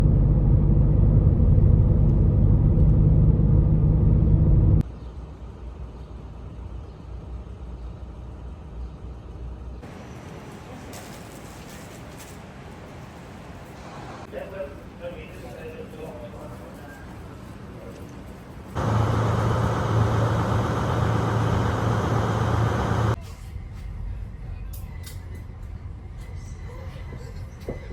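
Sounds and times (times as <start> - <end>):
engine humming steadily: 0.0 - 4.8, 18.7 - 23.2
moving vehicle rumble: 0.0 - 5.1, 18.7 - 23.2.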